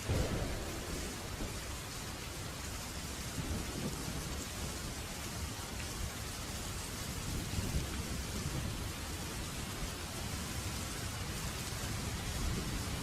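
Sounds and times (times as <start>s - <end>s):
thunder rumbling: 0.0s - 5.2s, 11.3s - 13.0s
rain falling: 0.0s - 13.0s.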